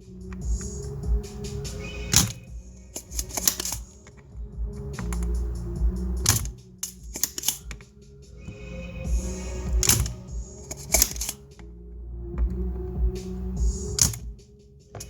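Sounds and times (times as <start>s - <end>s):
background music: 0.0s - 15.0s
low hum: 0.0s - 15.0s
small tools clicking and clattering: 3.0s - 4.2s, 6.3s - 7.9s, 9.8s - 11.4s.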